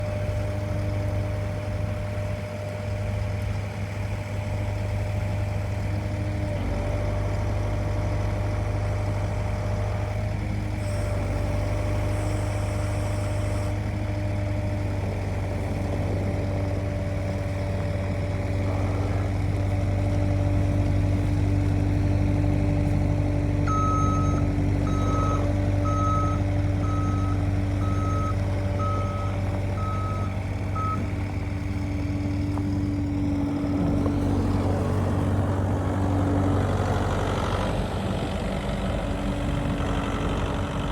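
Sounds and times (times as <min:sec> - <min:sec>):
diesel engine running: 0:00.0 - 0:40.9
backup alarm beeping: 0:23.7 - 0:31.0.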